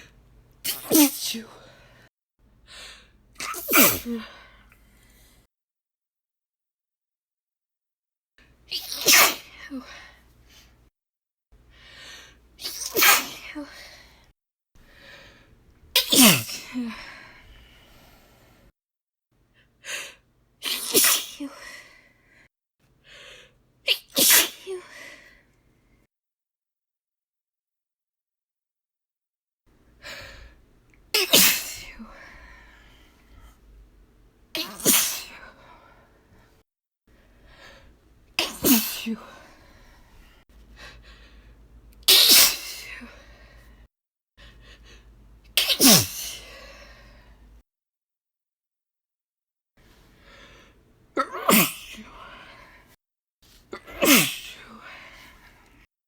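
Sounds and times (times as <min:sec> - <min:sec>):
woman sneezing: 0:00.6 - 0:01.6, 0:03.4 - 0:04.4, 0:08.7 - 0:10.1, 0:12.6 - 0:13.9, 0:16.0 - 0:17.1, 0:20.6 - 0:21.7, 0:23.9 - 0:25.0, 0:31.2 - 0:32.2, 0:34.6 - 0:35.5, 0:38.4 - 0:39.4, 0:42.1 - 0:43.2, 0:45.6 - 0:46.8, 0:51.2 - 0:52.2, 0:53.8 - 0:54.9.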